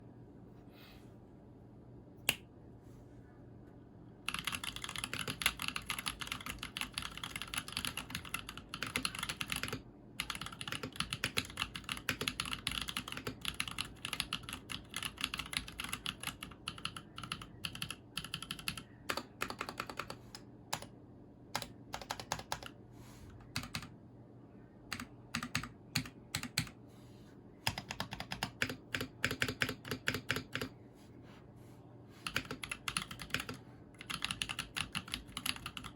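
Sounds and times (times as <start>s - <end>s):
mechanical keyboard typing: 4.3s - 20.9s, 21.5s - 22.8s, 23.4s - 23.9s, 24.9s - 26.8s, 27.6s - 30.7s, 32.2s - 35.9s.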